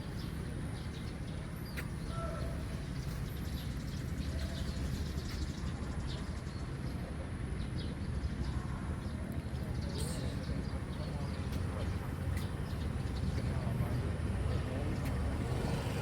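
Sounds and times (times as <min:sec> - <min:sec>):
birds chirping: 0:09.6 - 0:15.9.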